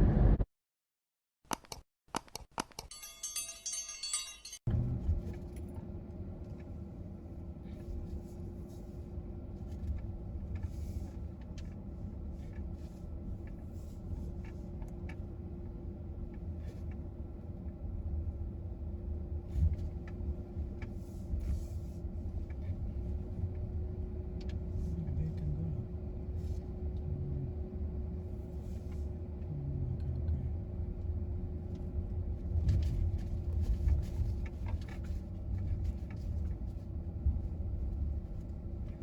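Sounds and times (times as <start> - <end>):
light clinking and jingling: 2.8 - 4.6
car interior driving rumble: 4.7 - 39.0.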